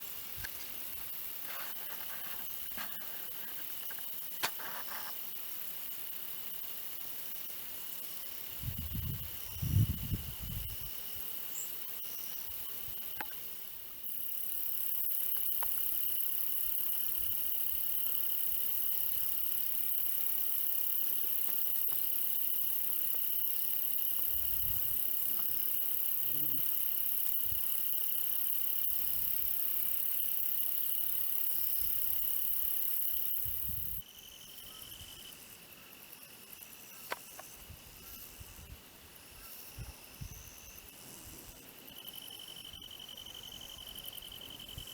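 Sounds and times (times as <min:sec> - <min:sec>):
grasshoppers buzzing: 0:00.0 - 0:13.4, 0:14.0 - 0:34.0
thin insect trill: 0:00.0 - 0:44.9.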